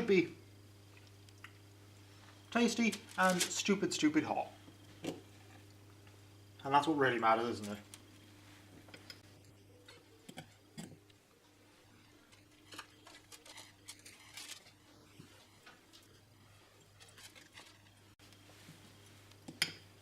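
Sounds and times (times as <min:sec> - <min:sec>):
steady low hum: 0:00.0 - 0:20.0
cookie dough scraping and clicks: 0:12.3 - 0:14.8.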